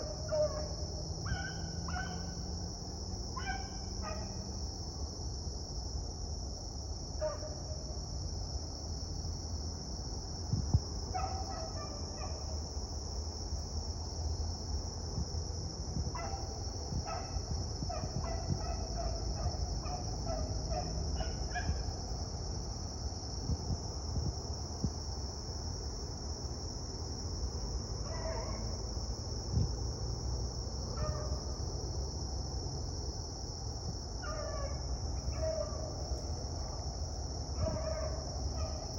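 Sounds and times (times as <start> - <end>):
beagles baying: 37.6 - 38.9.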